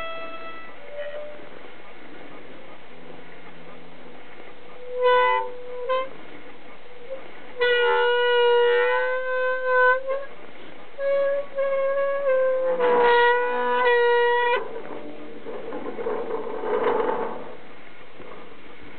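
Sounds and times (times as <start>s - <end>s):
rough grating sound: 0.0s - 18.9s
rotating gate squealing: 11.0s - 17.7s.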